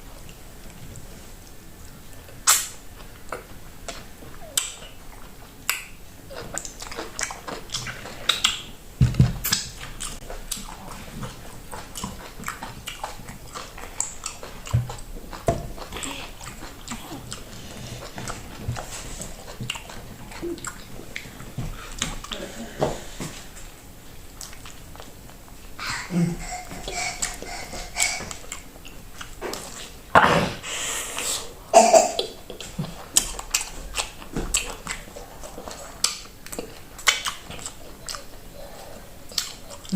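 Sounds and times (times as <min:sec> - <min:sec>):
chewing and slurping: 0:06.3 - 0:08.7, 0:09.4 - 0:23.3.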